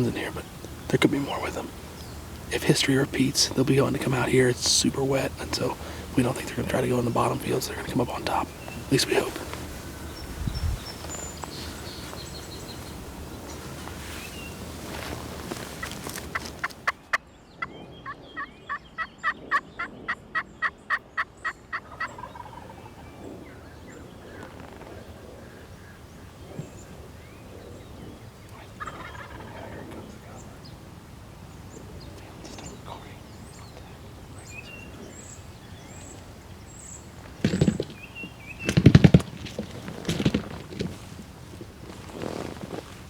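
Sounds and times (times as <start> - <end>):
wild turkey calling: 0.0 - 41.1
small birds chirping: 0.0 - 43.0.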